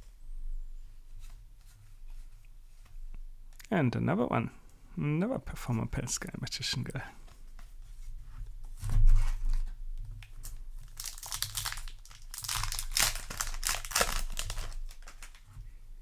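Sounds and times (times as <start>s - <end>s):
foil wrapper tearing and crinkling: 10.8s - 15.4s.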